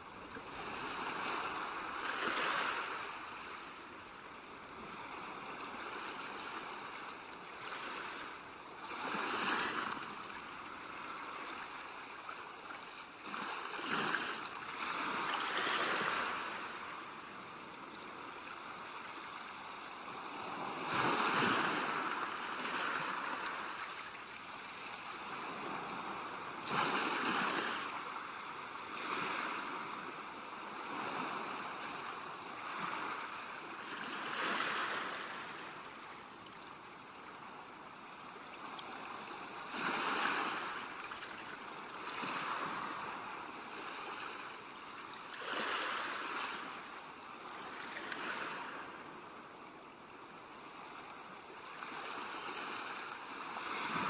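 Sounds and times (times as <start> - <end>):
ocean waves breaking: 0.5 - 3.6.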